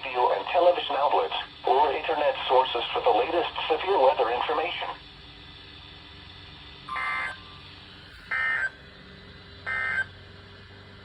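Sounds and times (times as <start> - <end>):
faint radio background noise: 0.0 - 5.0.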